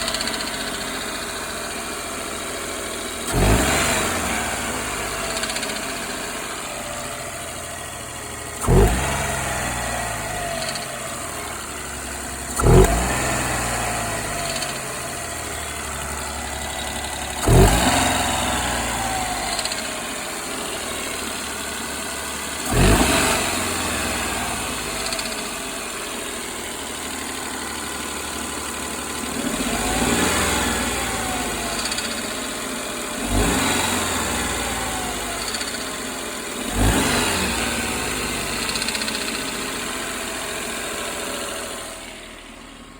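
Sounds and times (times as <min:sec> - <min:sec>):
engine rattle: 0:00.0 - 0:42.9
small engine idling and revving: 0:00.0 - 0:42.9.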